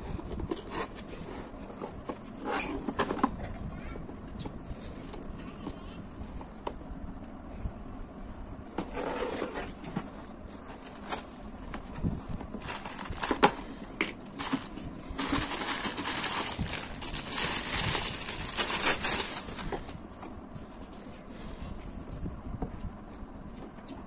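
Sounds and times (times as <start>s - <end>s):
wrapping rustling: 10.1s - 19.9s
packaging clicks and knocks: 12.4s - 19.7s.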